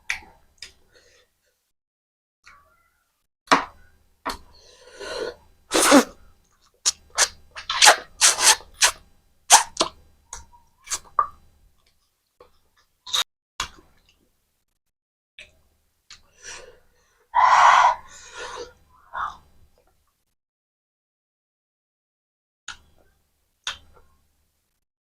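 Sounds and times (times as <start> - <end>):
sharp breathy noises: 16.3 - 19.5.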